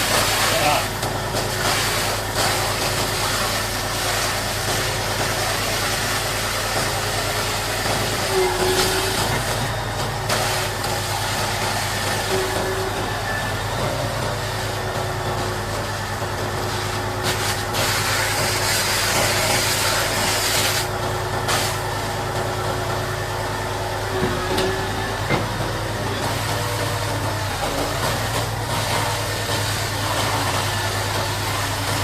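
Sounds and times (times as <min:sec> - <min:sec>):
diesel engine idling: 0:00.0 - 0:32.0.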